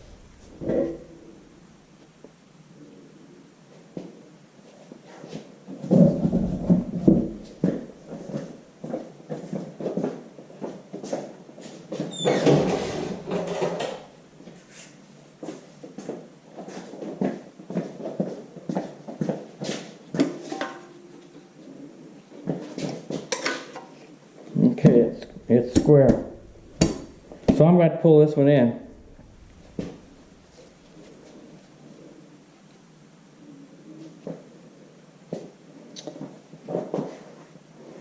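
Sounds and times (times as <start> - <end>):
heavy bumps: 0.0 - 1.5, 24.8 - 31.4
metal clunks and knocks: 25.2 - 27.6.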